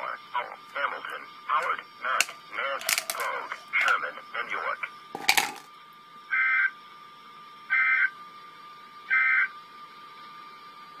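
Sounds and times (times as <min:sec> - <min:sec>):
modem-like data bursts: 0:00.0 - 0:05.0.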